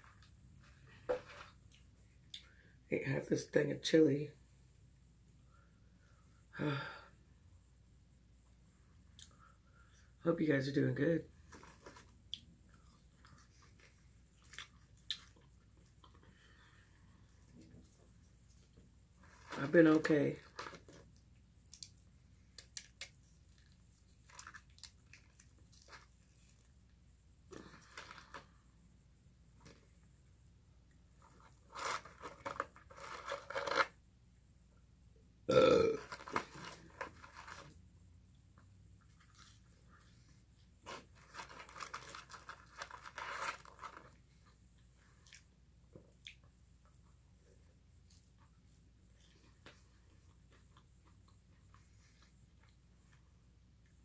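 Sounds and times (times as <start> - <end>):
person chewing food: 11.6 - 16.7.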